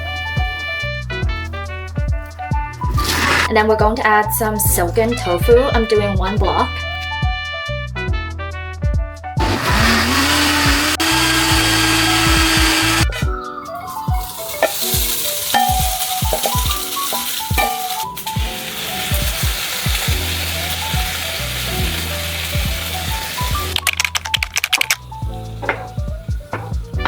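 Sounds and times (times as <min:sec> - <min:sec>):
background music with steady beat: 0:00.0 - 0:27.0
food sizzling in a pan: 0:09.4 - 0:13.0, 0:13.8 - 0:23.8
motor hum rising in pitch: 0:09.4 - 0:13.1.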